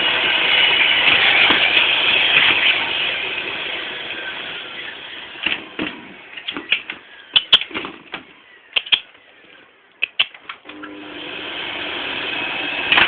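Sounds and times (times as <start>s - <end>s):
vacuum cleaner motor: 0.0s - 5.5s, 10.6s - 13.0s.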